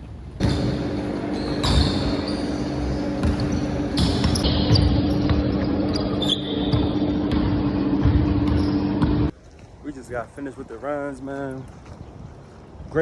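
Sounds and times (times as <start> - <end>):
steady mechanical hum: 0.0 - 9.4
basketball bouncing on gym floor: 0.4 - 9.3
short squeaks: 5.9 - 7.1.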